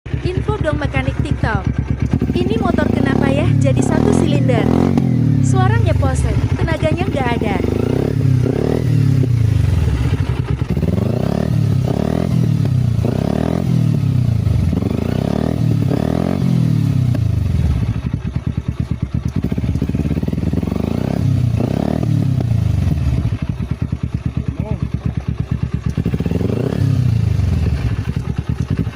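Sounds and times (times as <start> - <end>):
motorcycle engine revving and idling: 0.1 - 28.9
man talking: 24.4 - 24.9.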